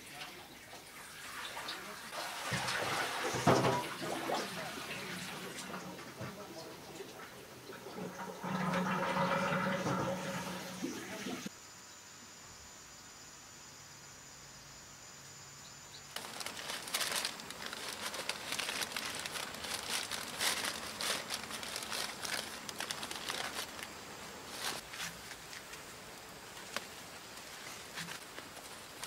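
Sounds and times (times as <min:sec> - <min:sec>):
crinkling and rustling: 0:02.2 - 0:04.4, 0:16.2 - 0:29.0.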